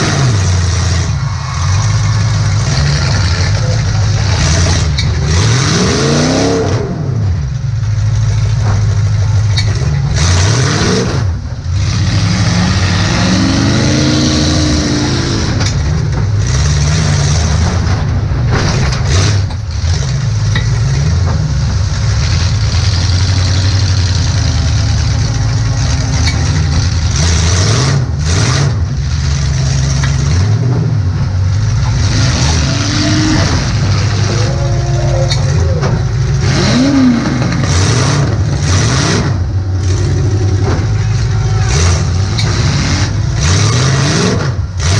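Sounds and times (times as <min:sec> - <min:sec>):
car engine revving: 0:00.0 - 0:44.9.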